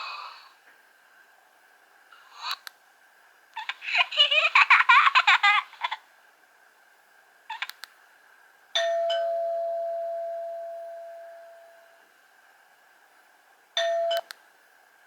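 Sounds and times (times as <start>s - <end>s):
steady held ringtone tone: 8.8s - 12.0s, 13.8s - 14.3s.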